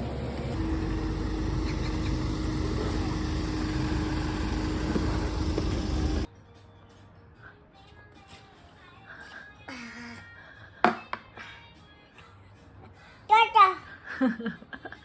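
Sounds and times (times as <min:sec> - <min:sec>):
steady hum: 0:00.0 - 0:06.3.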